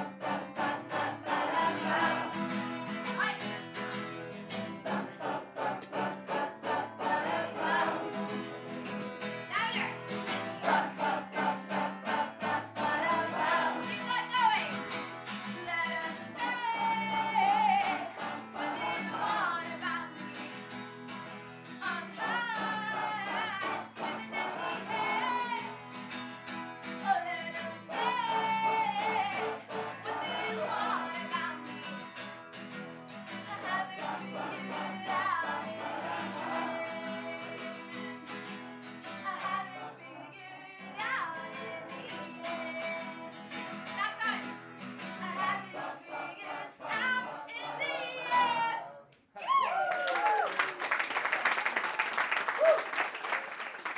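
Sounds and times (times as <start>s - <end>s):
strummed acoustic guitar: 0.0s - 48.8s
person singing: 21.8s - 25.8s, 27.0s - 31.9s, 39.3s - 43.3s.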